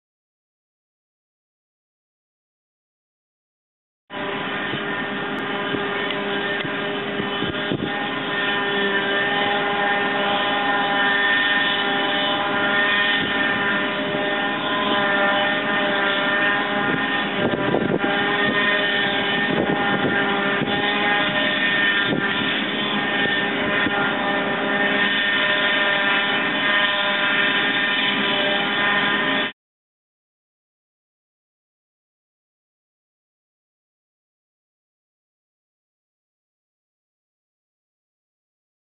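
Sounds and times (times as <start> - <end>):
forage harvester machine drone: 4.1 - 29.6.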